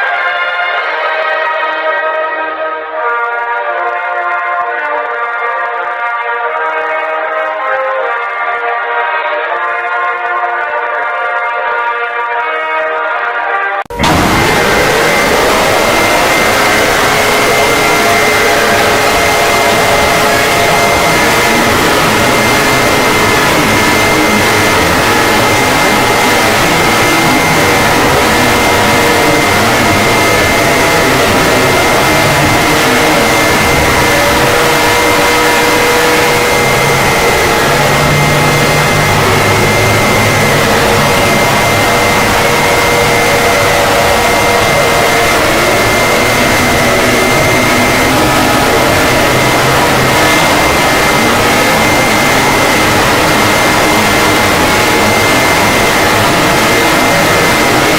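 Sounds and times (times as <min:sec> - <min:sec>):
distorted alert alarm: 0:13.9 - 0:57.9.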